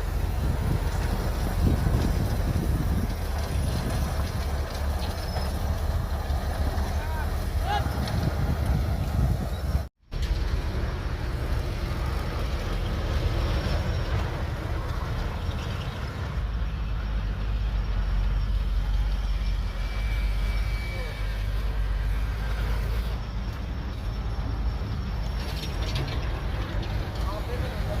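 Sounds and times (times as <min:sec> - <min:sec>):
diesel engine rumbling: 0:00.0 - 0:28.0.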